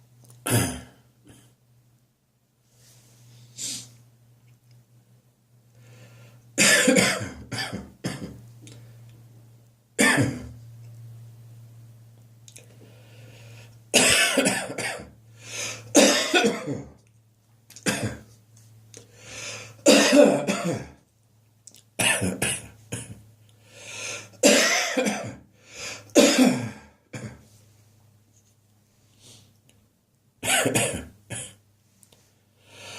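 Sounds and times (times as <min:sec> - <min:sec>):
throat clearing: 0:00.4 - 0:01.5
person coughing harshly: 0:00.5 - 0:01.5, 0:06.6 - 0:08.4, 0:10.0 - 0:10.5, 0:14.0 - 0:17.0, 0:17.8 - 0:18.3, 0:19.8 - 0:21.0, 0:22.0 - 0:23.2, 0:24.4 - 0:25.4, 0:26.2 - 0:27.4, 0:30.4 - 0:31.6.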